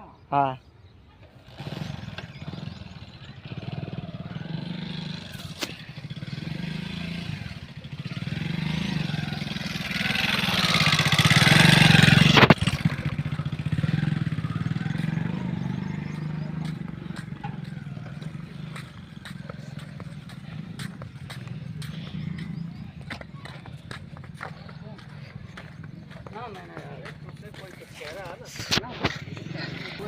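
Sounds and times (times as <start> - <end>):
vehicle engine running: 1.6 - 30.0.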